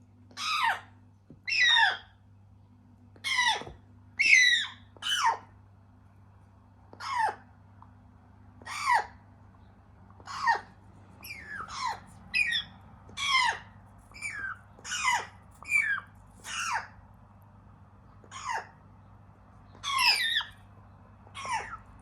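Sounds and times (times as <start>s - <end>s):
parrot chicks squawking: 0.4s - 0.9s, 1.5s - 2.1s, 3.2s - 5.5s, 7.0s - 7.4s, 8.6s - 9.2s, 10.1s - 17.0s, 18.1s - 18.9s, 19.7s - 20.7s, 21.3s - 22.0s.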